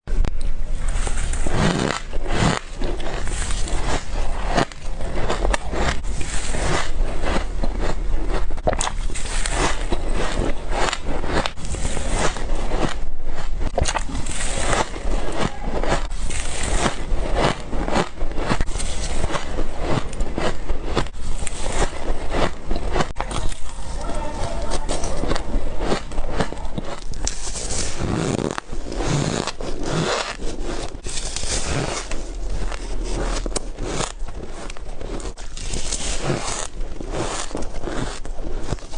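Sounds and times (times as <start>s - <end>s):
ice being crunched: 0.8s - 38.9s.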